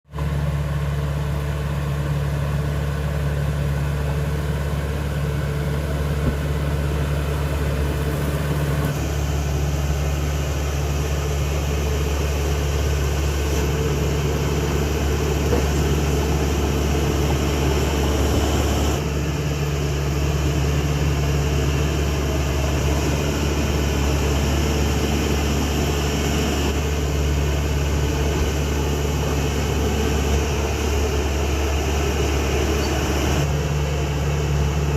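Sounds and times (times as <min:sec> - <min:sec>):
bulldozer diesel engine running: 0:00.1 - 0:34.9.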